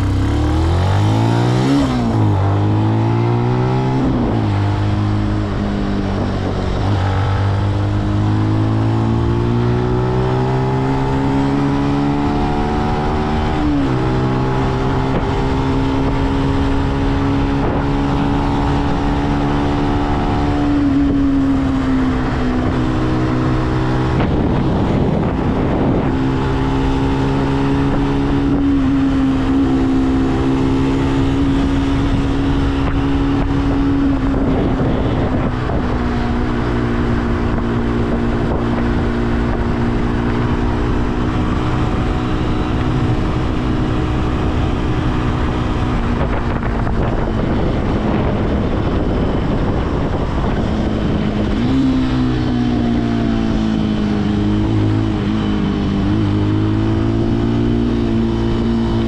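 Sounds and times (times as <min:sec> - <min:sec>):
motorcycle engine running: 0:00.0 - 0:59.0
wind noise on microphone: 0:00.0 - 0:59.0.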